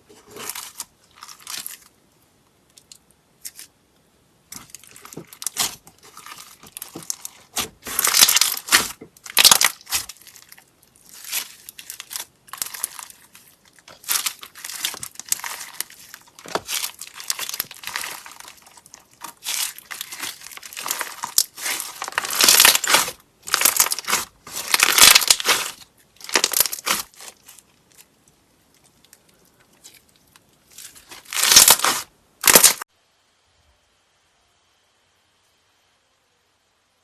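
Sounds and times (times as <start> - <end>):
slime crackling when squeezed: 4.6 - 27.6, 30.9 - 32.8.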